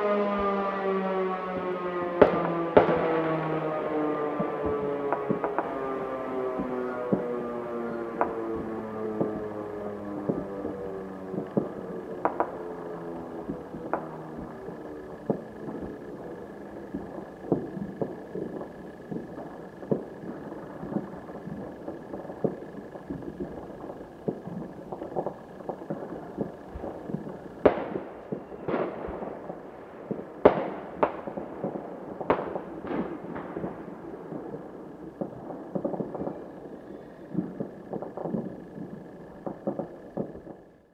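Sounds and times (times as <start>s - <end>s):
faint steady high tone: 0.0s - 32.4s, 33.2s - 40.9s
fireworks and firecrackers popping: 1.6s - 3.8s, 4.4s - 5.9s, 6.6s - 40.8s.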